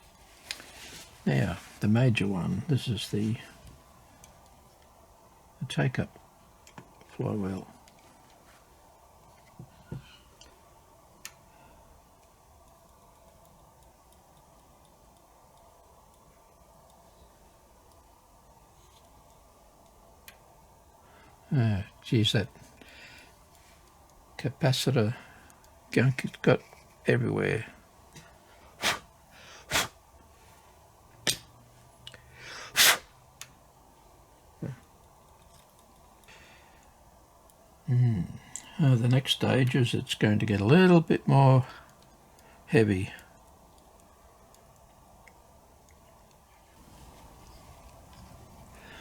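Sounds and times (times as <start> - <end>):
faint ticks of small parts: 6.0 - 32.6, 33.3 - 49.0
short hissing bursts: 28.6 - 30.0, 32.3 - 33.2.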